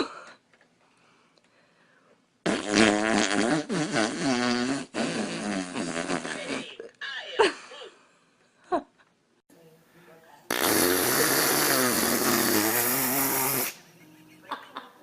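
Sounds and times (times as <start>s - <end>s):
long wavering fart: 2.4s - 6.6s, 10.5s - 13.8s.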